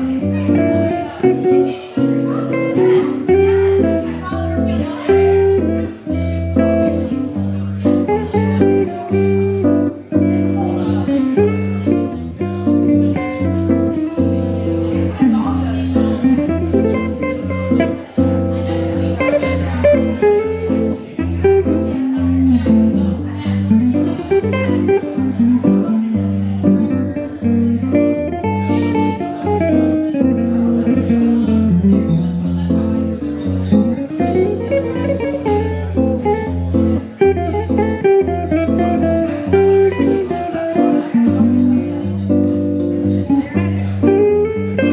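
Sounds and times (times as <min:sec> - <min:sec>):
electric guitar fingerstyle: 0:00.0 - 0:44.9
low bass line: 0:00.0 - 0:44.9.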